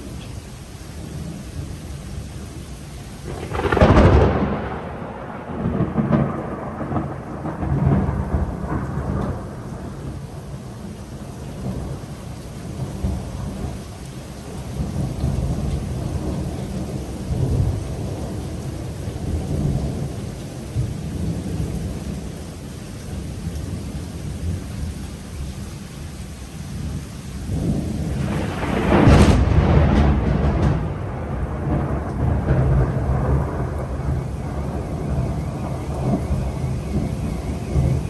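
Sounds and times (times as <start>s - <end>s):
steady rain: 0.0s - 38.0s
loud thunderclap: 3.2s - 10.6s, 27.5s - 38.0s
thunder rumbling: 3.2s - 22.6s, 26.8s - 38.0s.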